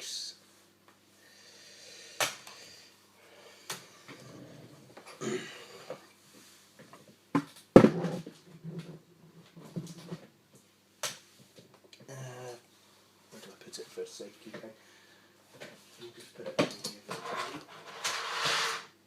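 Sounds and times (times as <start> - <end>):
hard objects knocking and clattering: 6.8 - 9.0.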